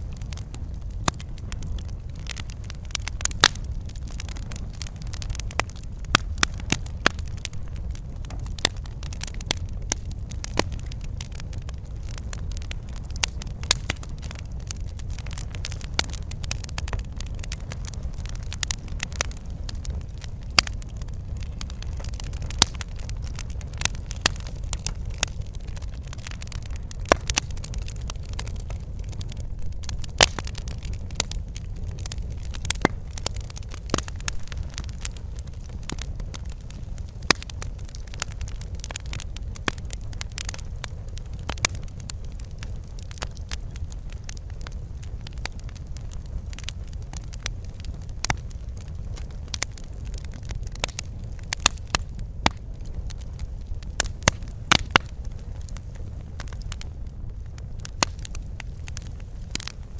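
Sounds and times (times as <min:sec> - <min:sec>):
steady low rumble: 0:00.0 - 0:46.6
sharp fire pops: 0:00.0 - 0:59.9
wood fire crackling: 0:00.0 - 0:59.9.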